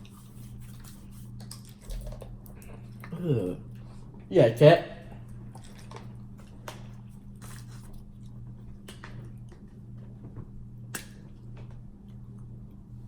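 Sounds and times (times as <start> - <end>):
chewing crispy food: 0.0 - 4.3, 5.0 - 13.0
steady low hum: 0.0 - 13.0
wet mouth clicks and smacks: 10.9 - 11.3.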